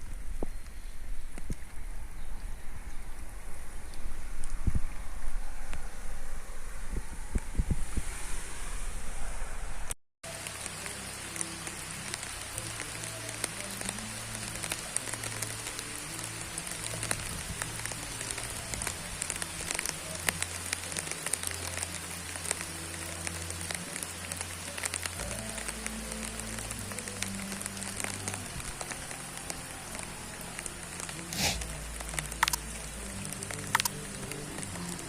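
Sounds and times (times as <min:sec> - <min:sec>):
wind rumble: 0:00.0 - 0:10.0
heavy rain falling: 0:00.0 - 0:35.0.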